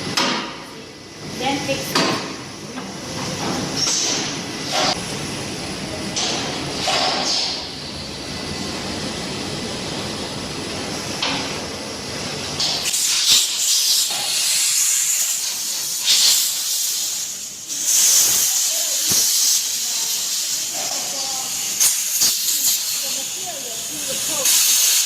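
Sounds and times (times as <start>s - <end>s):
low machine noise: 0.0s - 24.6s
compressed air hissing: 12.6s - 25.0s.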